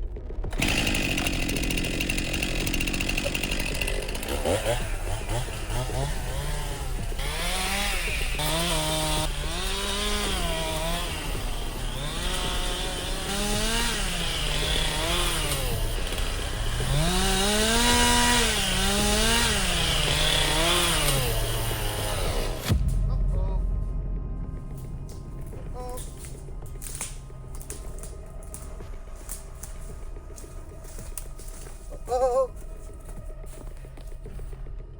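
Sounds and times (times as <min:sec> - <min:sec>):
chainsaw cutting wood: 0:00.5 - 0:22.8.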